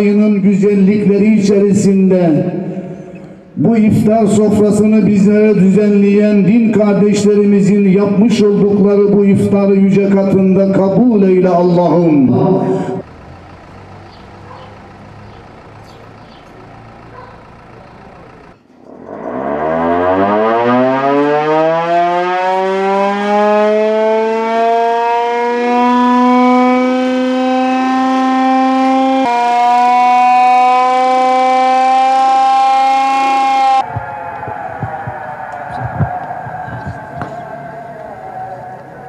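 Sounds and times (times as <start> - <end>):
siren winding up and wailing: 16.5 - 39.0.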